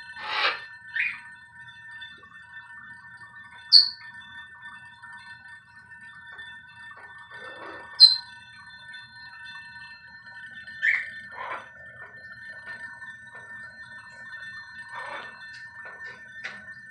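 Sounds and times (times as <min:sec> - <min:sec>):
crystal glasses ringing: 0:03.7 - 0:04.0.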